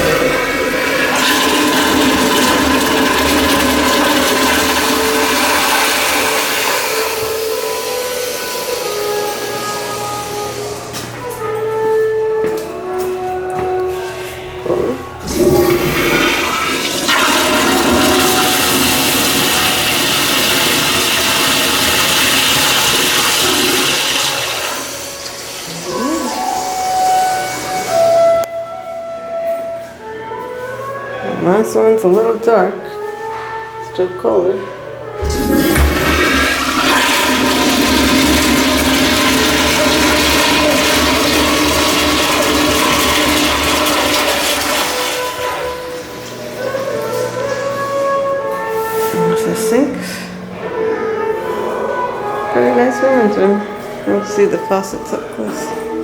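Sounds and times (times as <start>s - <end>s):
toilet flushing: 0.0s - 11.4s, 14.8s - 28.3s, 35.2s - 50.7s.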